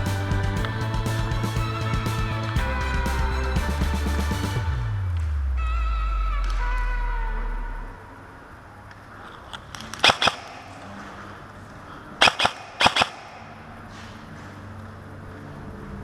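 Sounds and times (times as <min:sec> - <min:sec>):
airsoft gun shots: 0:12.2 - 0:13.5.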